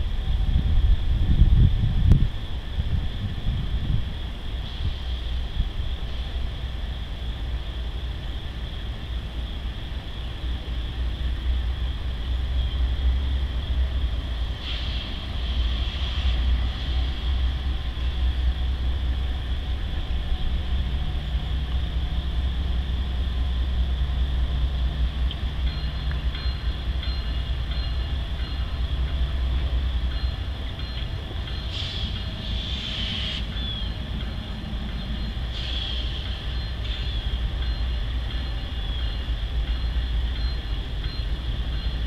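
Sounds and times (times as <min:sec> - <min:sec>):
freight train rumbling past: 0:00.0 - 0:42.0.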